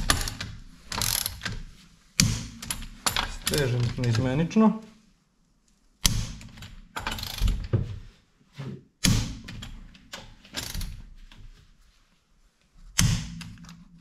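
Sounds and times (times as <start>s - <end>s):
torque wrench ratcheting and clicking: 1.0s - 1.5s, 7.0s - 7.5s, 10.6s - 10.8s.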